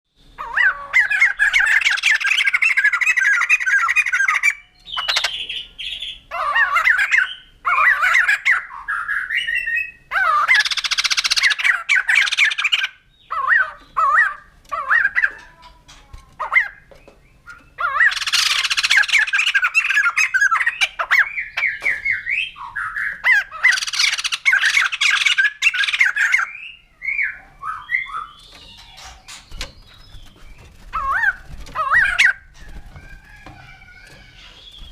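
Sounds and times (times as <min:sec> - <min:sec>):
bird chattering laugh-like calls: 0:10.1 - 0:15.5, 0:17.5 - 0:29.6.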